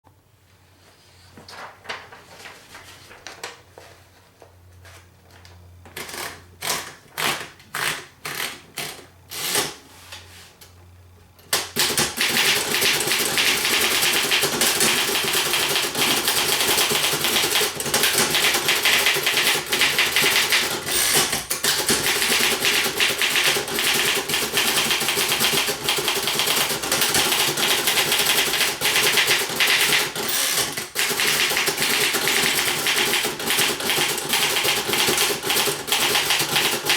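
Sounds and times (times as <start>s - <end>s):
typewriter typing: 11.6s - 36.9s.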